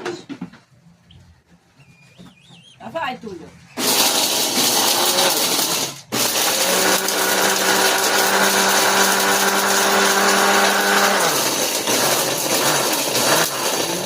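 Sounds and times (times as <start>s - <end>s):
blender grinding pellets: 3.8s - 14.0s.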